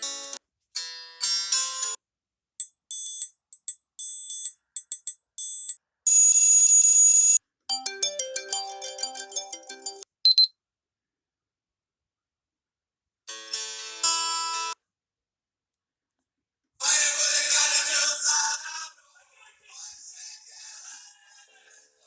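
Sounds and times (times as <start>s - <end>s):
loud buzzing alarm ring: 2.6s - 7.4s
short high electronic beeps: 2.6s - 7.4s, 10.3s - 10.5s
quick electronic melody: 7.7s - 10.0s.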